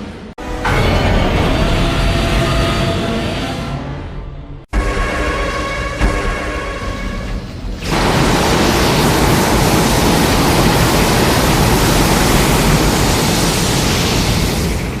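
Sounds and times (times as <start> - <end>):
static-like rushing noise: 7.9 - 15.0.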